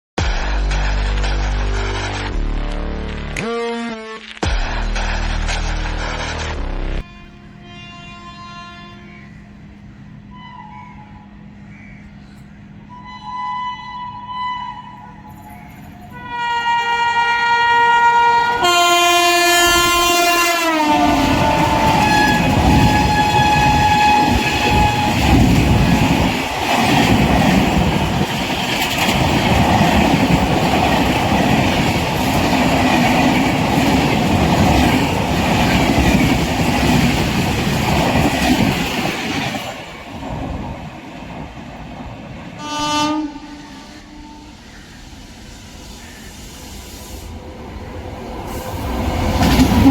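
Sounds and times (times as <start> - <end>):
train horn: 7.0 - 9.6, 10.3 - 11.4, 12.9 - 26.0, 42.6 - 44.9
train coaches clattering over rails: 15.2 - 17.6, 18.6 - 42.6, 47.9 - 49.9.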